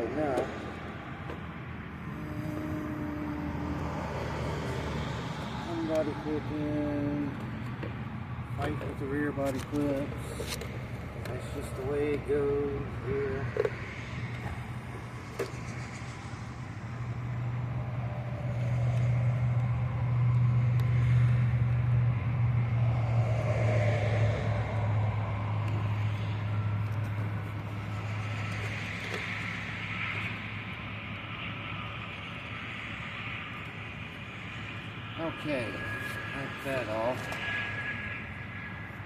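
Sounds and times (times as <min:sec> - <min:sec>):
vehicle engine passing: 0:00.0 - 0:07.7, 0:08.3 - 0:30.6.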